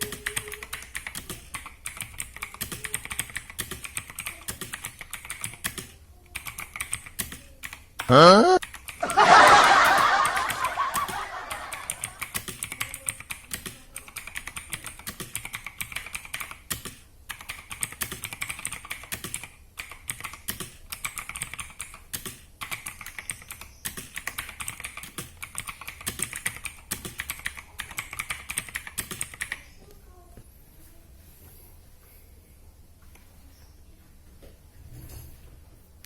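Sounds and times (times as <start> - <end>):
clicky mechanical keyboard typing: 0.0 - 9.0, 11.9 - 29.6.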